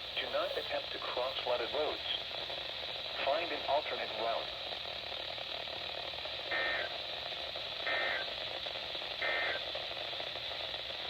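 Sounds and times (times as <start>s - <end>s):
radio hiss: 0.0s - 11.0s
buzzy two-tone digital data bursts: 6.5s - 6.9s, 9.2s - 9.6s.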